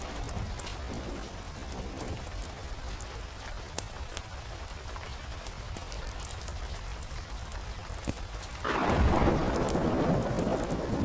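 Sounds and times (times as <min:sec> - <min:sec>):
low storm rumble: 0:00.0 - 0:11.0
open fire crackling: 0:00.0 - 0:11.0
rain: 0:00.0 - 0:11.0
thunder clap: 0:08.6 - 0:11.0.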